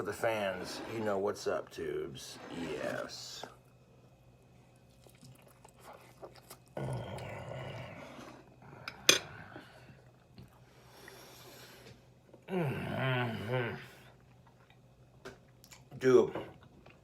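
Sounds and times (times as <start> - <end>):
man chewing food: 3.4 - 12.5, 13.8 - 17.0.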